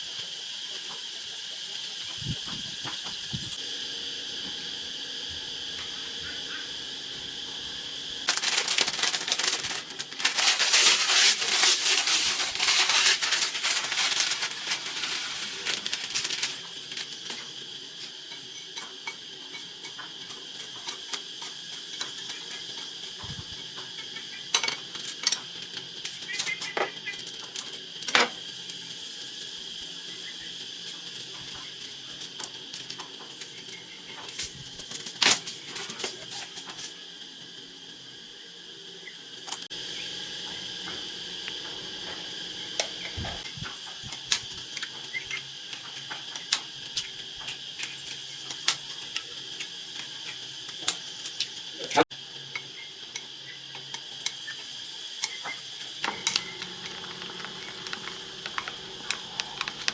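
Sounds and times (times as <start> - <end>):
insects chirring: 5.3 - 40.7, 52.6 - 59.9
clattering and rustling handling: 8.3 - 17.0.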